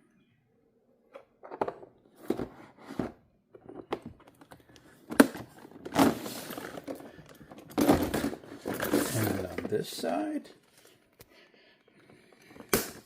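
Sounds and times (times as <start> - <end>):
plastic case rustling: 1.4 - 11.1.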